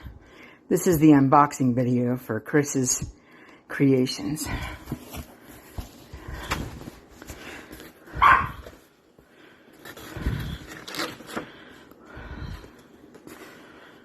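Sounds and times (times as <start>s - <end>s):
dog barking: 8.2s - 8.6s.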